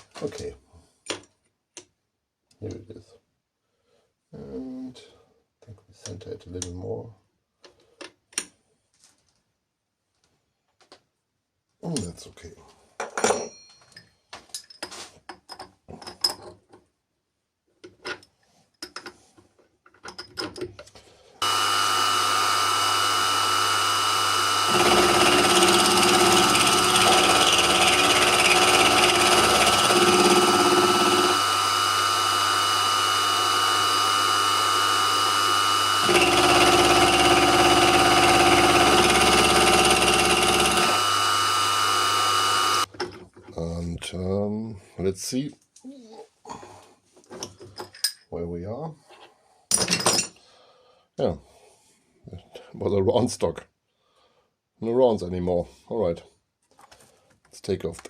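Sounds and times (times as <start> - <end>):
end mill cutting metal: 21.4 - 42.8
milling machine spindle whining: 21.4 - 42.9.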